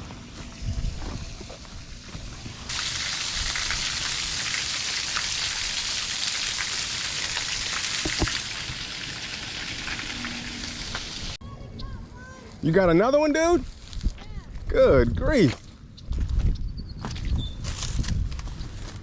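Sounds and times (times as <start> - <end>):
steady rain-like hiss: 1.5 - 11.4.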